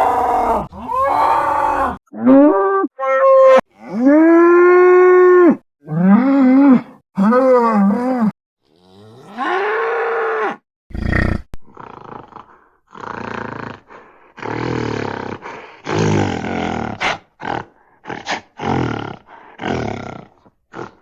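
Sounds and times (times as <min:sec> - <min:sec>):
cartoon bull mooing: 0:00.0 - 0:13.5
rough breathy grunts: 0:10.9 - 0:21.0.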